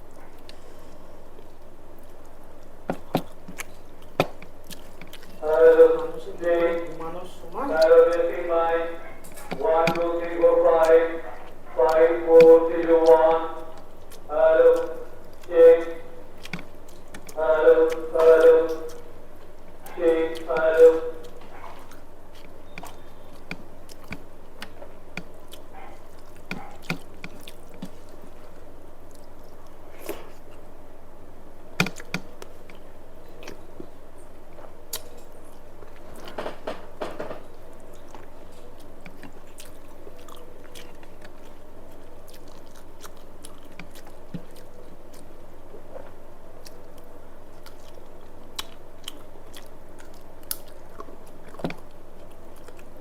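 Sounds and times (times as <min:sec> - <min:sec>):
low hum: 0:00.0 - 0:53.0
person chewing food: 0:00.0 - 0:53.0
wet mouth smacks and clicks: 0:34.9 - 0:36.0, 0:48.6 - 0:51.9.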